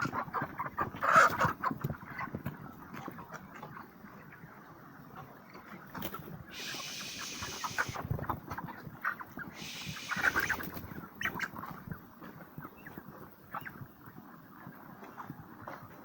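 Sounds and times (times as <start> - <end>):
chickens clucking and calling: 0.0 - 4.5, 5.2 - 16.0
hiss: 6.5 - 8.0, 9.6 - 10.7.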